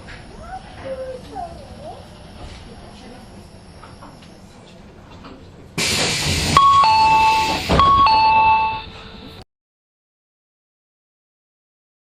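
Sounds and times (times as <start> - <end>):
two-note door chime: 6.6 - 9.1.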